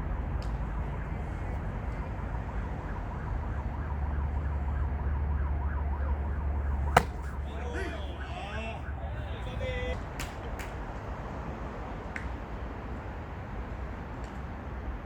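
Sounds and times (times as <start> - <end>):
distant emergency siren wailing: 2.2 - 9.1.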